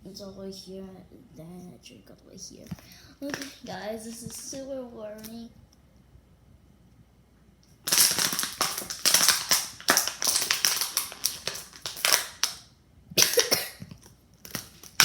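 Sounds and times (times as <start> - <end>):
plastic bottle crinkling: 2.8 - 4.6, 7.8 - 12.6, 13.2 - 15.0.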